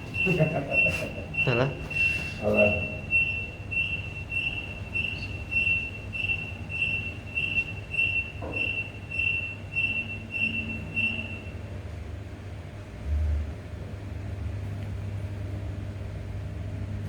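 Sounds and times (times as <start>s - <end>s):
low hum of lift: 0.0s - 17.0s
high-pitched buzzer beeping: 0.1s - 11.5s.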